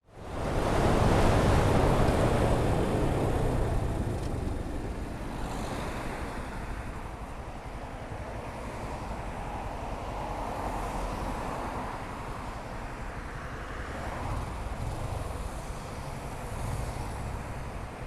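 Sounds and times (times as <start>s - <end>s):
road noise: 0.0s - 18.0s
wind noise on microphone: 0.2s - 7.3s.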